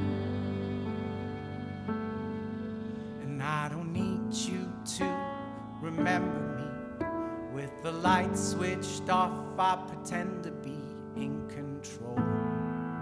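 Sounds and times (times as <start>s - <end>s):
sustained wavering string notes: 0.0s - 3.8s.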